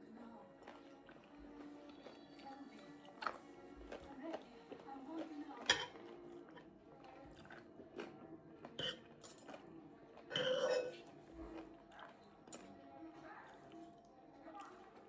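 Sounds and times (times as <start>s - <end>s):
person chewing food: 0.6s - 2.4s, 3.1s - 9.6s
cutlery clicking on a plate: 5.6s - 6.1s, 8.8s - 9.6s.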